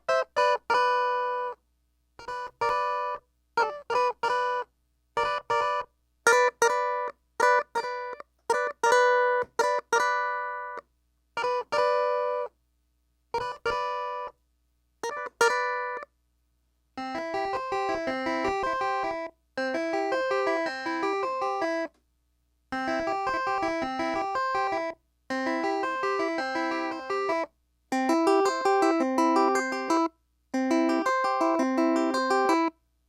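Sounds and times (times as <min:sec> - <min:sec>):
clavinet funk riff: 0:22.8 - 0:32.7.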